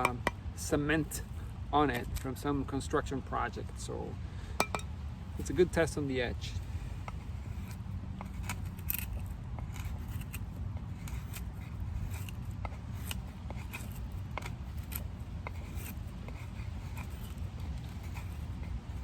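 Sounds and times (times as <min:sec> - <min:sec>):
steady low rumble: 0:00.0 - 0:19.0
knife scraping wood: 0:06.6 - 0:19.0.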